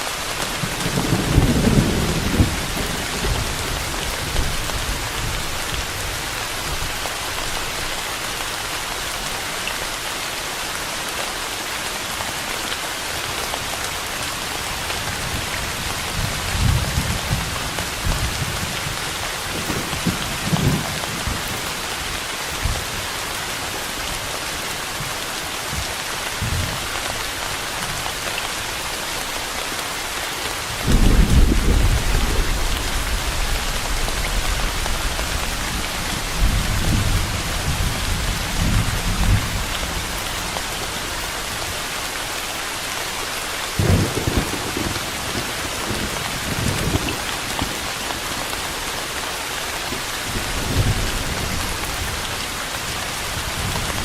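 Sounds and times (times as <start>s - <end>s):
steady rain falling: 0.0s - 54.0s
thunder rumbling: 0.4s - 6.9s, 30.8s - 40.7s, 43.8s - 47.8s.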